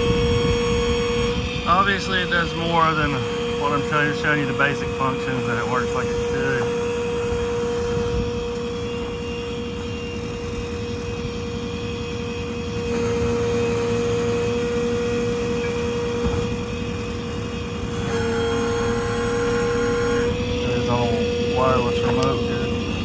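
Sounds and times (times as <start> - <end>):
diesel engine running: 0.0 - 23.0
hydraulic whine: 0.0 - 23.0.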